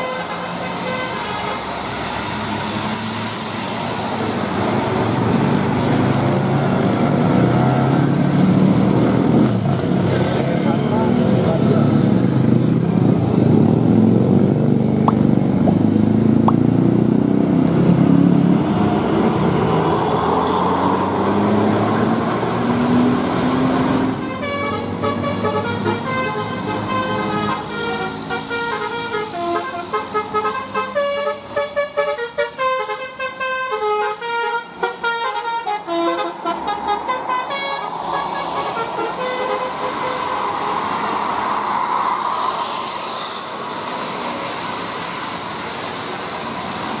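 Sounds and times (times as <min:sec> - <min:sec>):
musical horn tooting a tune: 0:24.2 - 0:40.3.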